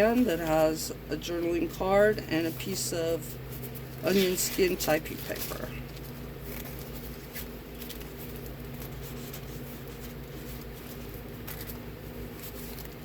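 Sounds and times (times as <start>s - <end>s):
steady low hum: 0.0s - 13.0s
paper rustling: 2.4s - 13.0s
paper crinkles and taps: 5.2s - 13.0s.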